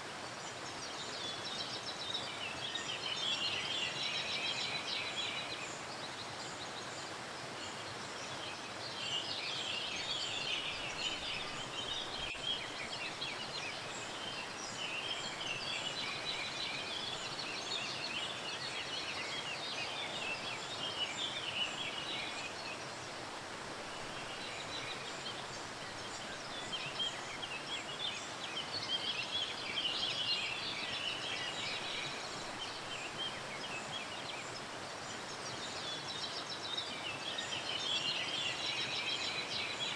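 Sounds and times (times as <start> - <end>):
small birds chirping: 0.5 - 23.2, 23.8 - 39.9.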